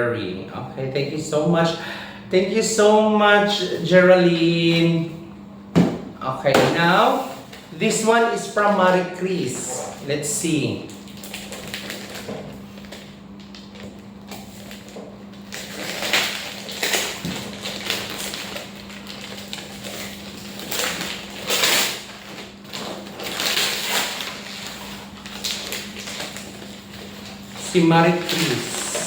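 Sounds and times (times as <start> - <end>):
steady low hum: 0.0 - 29.0
gift wrapping rustling and crinkling: 11.1 - 29.0.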